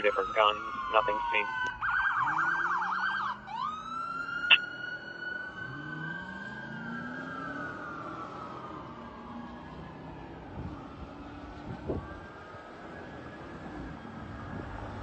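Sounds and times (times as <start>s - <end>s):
electronic siren warbling and wailing: 0.0s - 7.9s.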